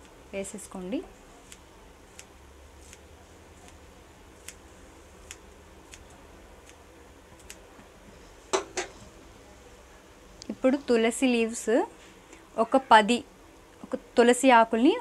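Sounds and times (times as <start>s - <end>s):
scissors snipping leaves: 1.4s - 3.8s, 4.4s - 4.6s, 5.2s - 6.8s, 7.4s - 7.6s.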